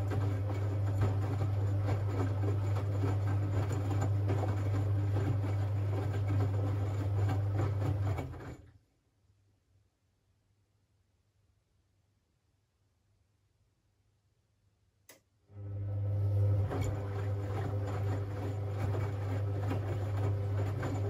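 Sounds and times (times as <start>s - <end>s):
water and laundry sloshing: 0.0s - 8.6s, 16.4s - 21.0s
washing machine hum: 0.0s - 8.8s, 15.5s - 21.0s.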